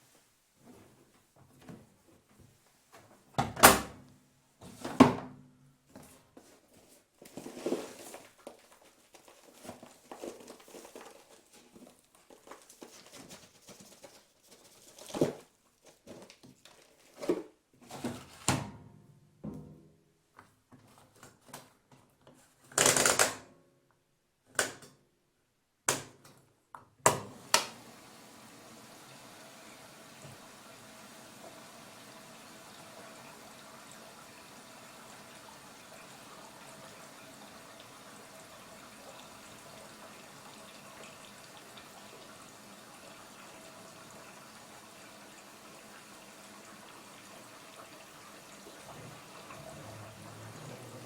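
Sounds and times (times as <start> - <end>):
washing machine clunks and knocks: 3.4 - 4.0, 4.9 - 5.4
washing machine clatter: 48.7 - 51.0.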